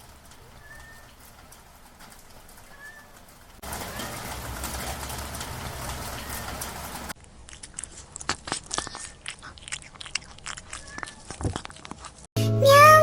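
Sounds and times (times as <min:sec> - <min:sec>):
crunching and chewing: 0:07.1 - 0:12.3.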